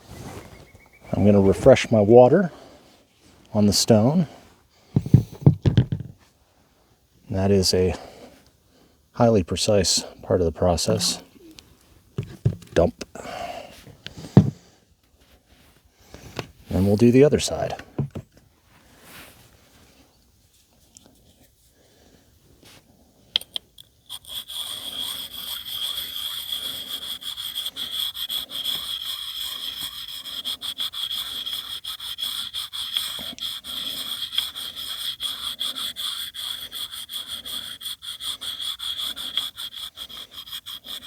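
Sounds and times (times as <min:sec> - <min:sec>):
sharpening stone scraping axe blade: 0:10.9 - 0:11.3, 0:23.4 - 0:41.0.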